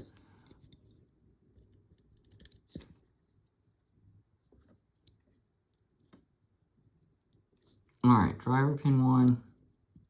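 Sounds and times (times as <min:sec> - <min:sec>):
small metal padlock parts clicking: 0:02.2 - 0:02.6.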